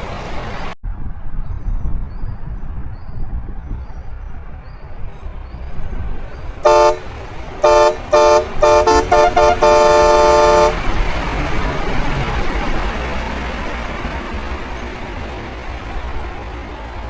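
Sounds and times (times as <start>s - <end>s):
low road rumble: 0.0s - 17.0s
truck horn chord blasts: 6.6s - 11.0s.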